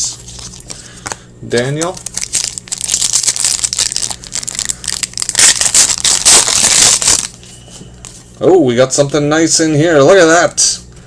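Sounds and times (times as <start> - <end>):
plastic wrapper crinkling and tearing: 1.6 - 7.4.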